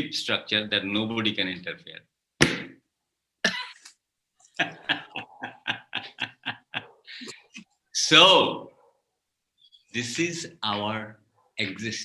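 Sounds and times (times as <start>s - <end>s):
man coughing: 3.4s - 3.9s, 4.6s - 7.5s.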